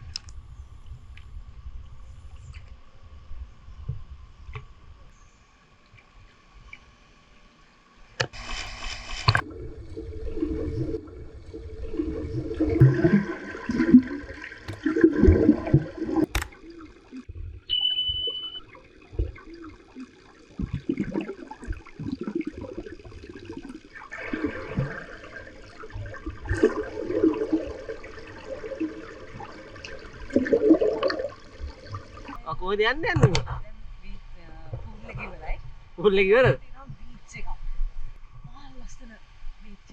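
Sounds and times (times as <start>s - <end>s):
pool water sloshing and splashing: 8.0s - 32.5s.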